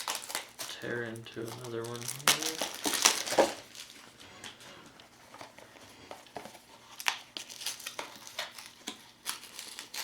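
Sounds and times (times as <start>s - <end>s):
packaging tearing and crinkling: 0.0s - 4.6s, 6.8s - 10.0s.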